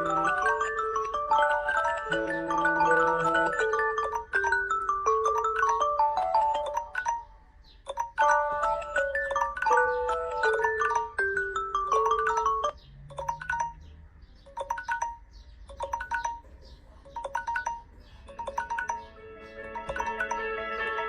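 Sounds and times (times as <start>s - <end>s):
bell-like alarm melody: 0.0s - 21.0s
chiming melody: 0.0s - 21.0s
two-note chime: 18.4s - 21.0s.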